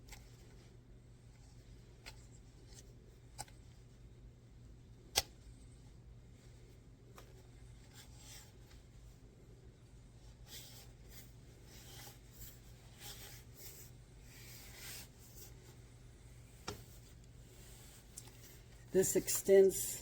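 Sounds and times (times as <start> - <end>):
hands rubbing and scraping: 10.5 - 15.8.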